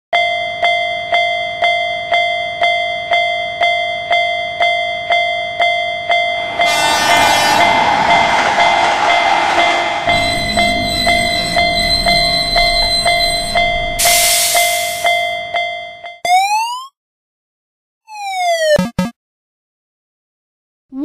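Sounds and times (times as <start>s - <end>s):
railroad crossing bell ringing: 0.2s - 7.6s, 10.1s - 16.2s
passing train rushing: 5.3s - 15.3s.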